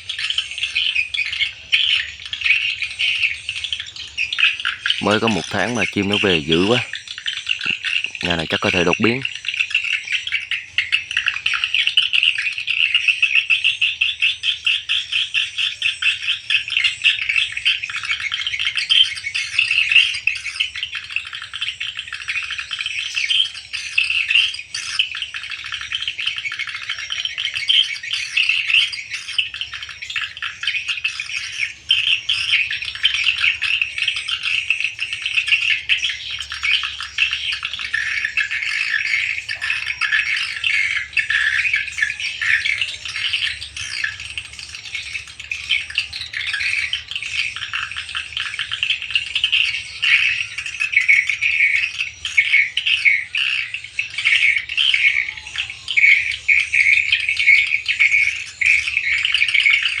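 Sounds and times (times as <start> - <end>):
swiftlets twittering: 1.4 - 11.0.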